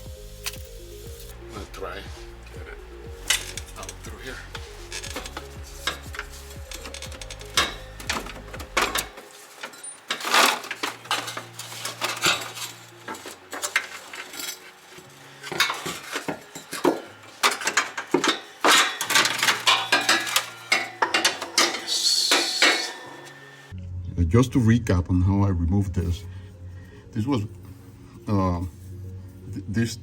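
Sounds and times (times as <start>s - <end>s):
metal shaft clanking: 2.4s - 23.5s.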